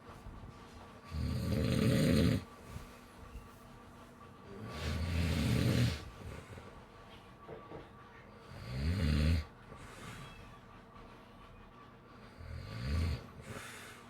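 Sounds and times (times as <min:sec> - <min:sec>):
snoring: 0:01.1 - 0:02.5, 0:04.6 - 0:06.1, 0:08.5 - 0:09.5, 0:12.4 - 0:13.6.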